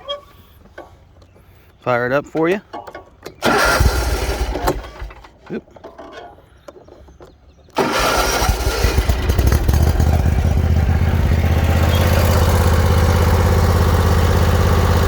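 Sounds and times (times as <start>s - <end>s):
mower engine starting and running: 3.4s - 5.4s, 7.8s - 15.0s.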